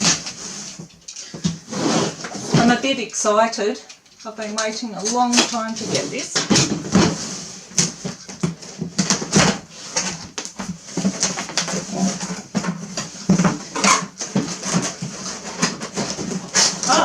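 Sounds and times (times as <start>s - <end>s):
cardboard packaging rustling: 5.0s - 17.0s.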